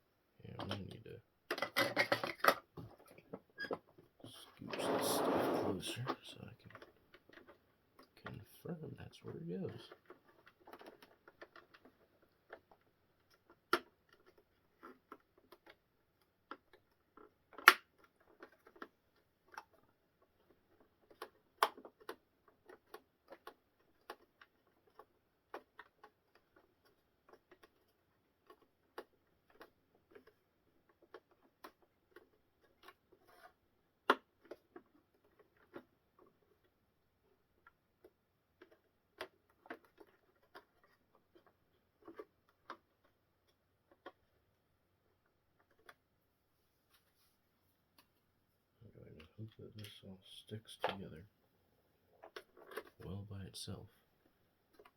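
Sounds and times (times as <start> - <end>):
plastic parts clicking and tapping: 0.6 - 4.0, 9.9 - 46.2.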